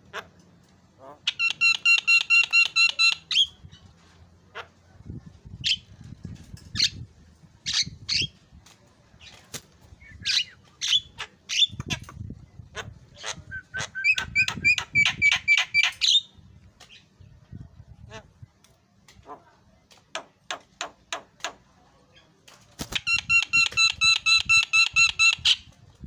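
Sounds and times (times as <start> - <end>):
bird squawks and chattering: 1.0 - 3.8, 7.6 - 8.4, 10.0 - 16.3
bird singing repeated notes: 1.2 - 3.8, 22.2 - 25.7.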